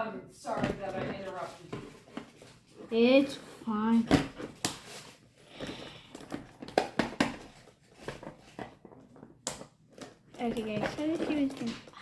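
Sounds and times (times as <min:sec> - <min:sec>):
packaging rustle: 0:04.2 - 0:12.0.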